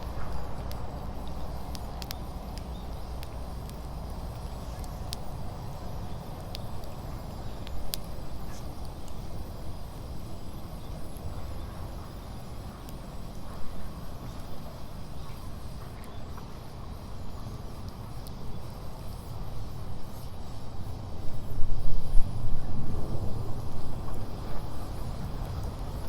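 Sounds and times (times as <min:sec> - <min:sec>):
fire low rumble: 0:00.0 - 0:26.0
wood fire crackling: 0:00.0 - 0:26.0.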